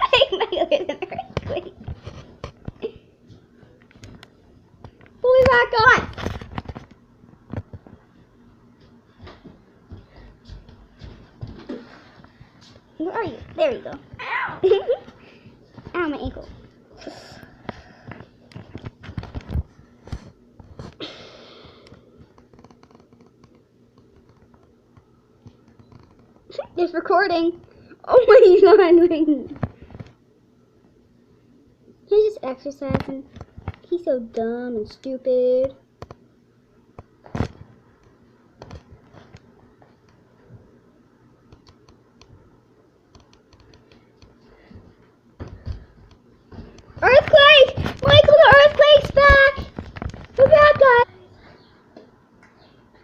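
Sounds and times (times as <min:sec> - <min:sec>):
light clicks and taps: 0:43.1 - 0:44.4.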